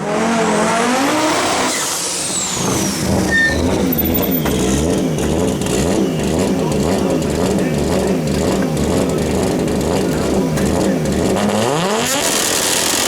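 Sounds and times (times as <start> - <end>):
race car engine revving: 0.0 - 13.0
turbo whistle falling: 2.5 - 4.8.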